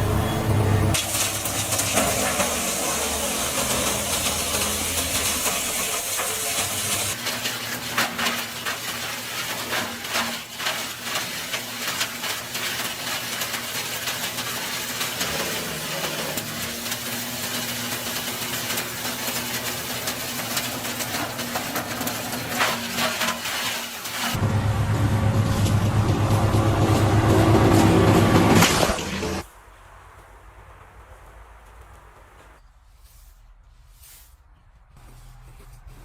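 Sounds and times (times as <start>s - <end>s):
wood chipper shredding wood: 0.0s - 29.4s.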